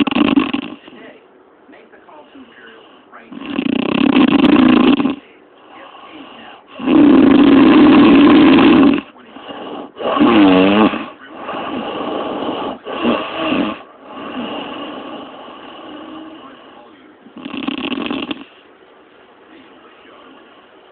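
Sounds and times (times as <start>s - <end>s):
woman snoring loudly: 0.0s - 0.8s, 3.3s - 5.2s, 6.7s - 16.4s, 17.4s - 18.5s
quiet breaths: 0.0s - 20.9s.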